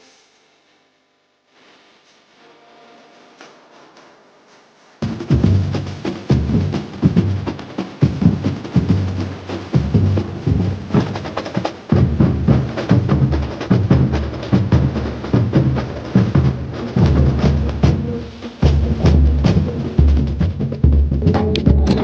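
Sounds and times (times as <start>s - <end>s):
deep bass drums pounding: 5.0s - 22.0s
drum corps playing: 5.0s - 22.0s.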